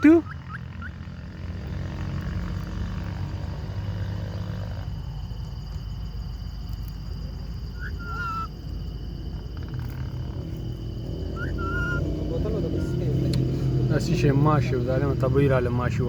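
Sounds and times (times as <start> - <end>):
parrot call: 0.0 - 1.1, 7.7 - 8.6, 11.2 - 13.1.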